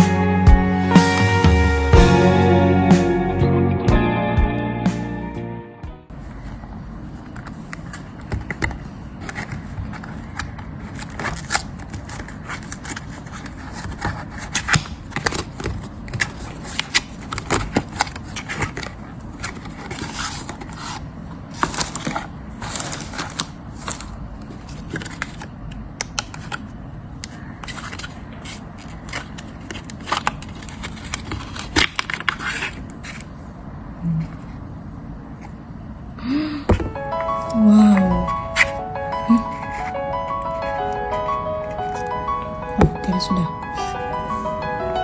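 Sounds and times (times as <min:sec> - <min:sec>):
packaging scraping and scratching: 0:07.2 - 0:25.6, 0:26.2 - 0:33.4.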